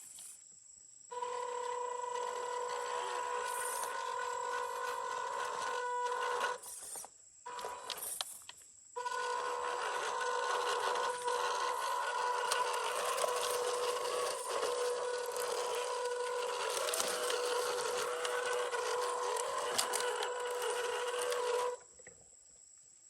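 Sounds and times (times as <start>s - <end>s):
electric motor whining: 1.1s - 8.4s, 9.0s - 21.9s
tyres scraping on ground: 9.0s - 21.8s.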